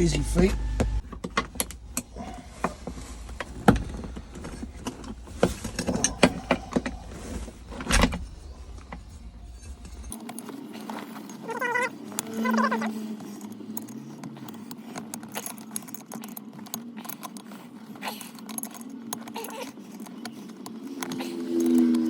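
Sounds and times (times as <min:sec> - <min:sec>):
metallic clicks and rattles of tools: 0:13.1 - 0:22.0.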